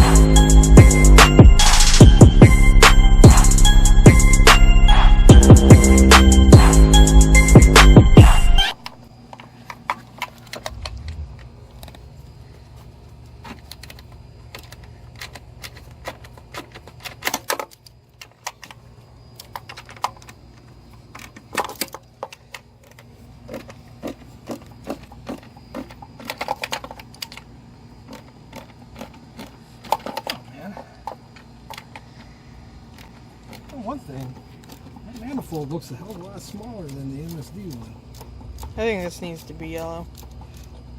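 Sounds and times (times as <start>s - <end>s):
faint low hum: 8.9s - 17.2s
tools and parts clicking: 13.4s - 32.3s, 32.9s - 40.9s.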